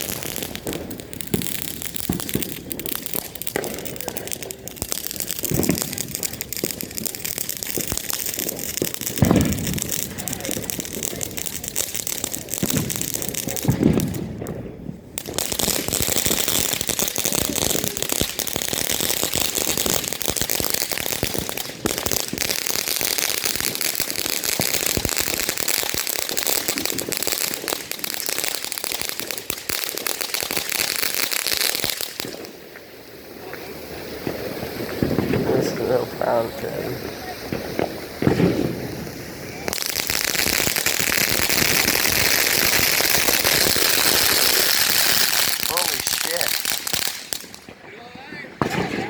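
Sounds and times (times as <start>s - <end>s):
firework fountain crackling and hissing: 0.0s - 49.0s.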